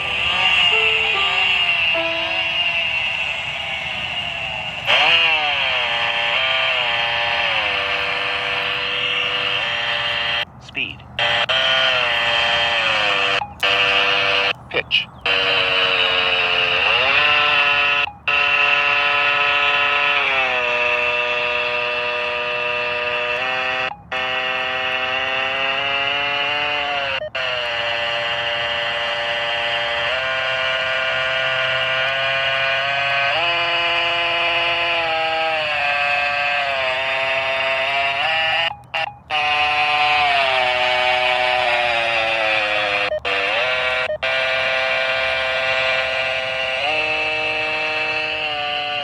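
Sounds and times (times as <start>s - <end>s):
music from small speaker: 0.0s - 6.8s.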